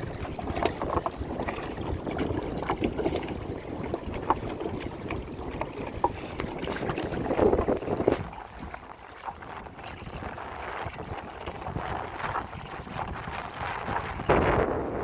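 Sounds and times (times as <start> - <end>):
water splashing around kayak: 0.0 - 15.0
wind noise on microphone: 0.0 - 15.0.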